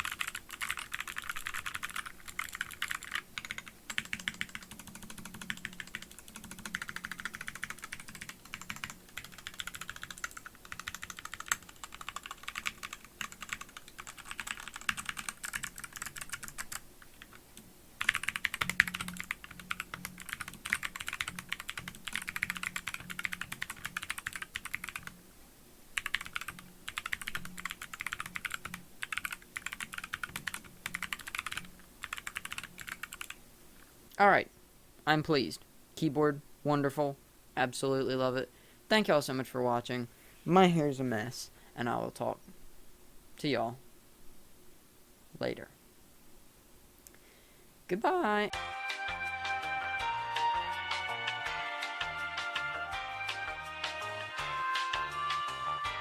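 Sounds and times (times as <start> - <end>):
mechanical keyboard typing: 0.0 - 17.4, 18.0 - 25.2, 26.0 - 33.4.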